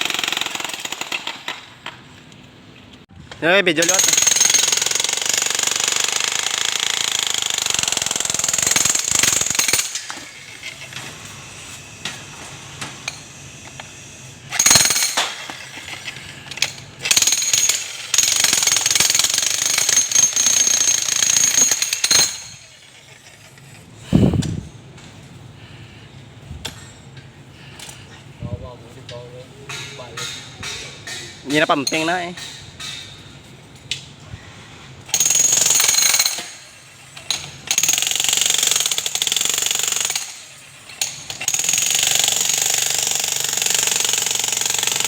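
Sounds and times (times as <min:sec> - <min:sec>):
demolition hammer chiselling concrete: 0:03.8 - 0:10.8, 0:14.5 - 0:23.2, 0:35.1 - 0:36.7, 0:37.3 - 0:45.0.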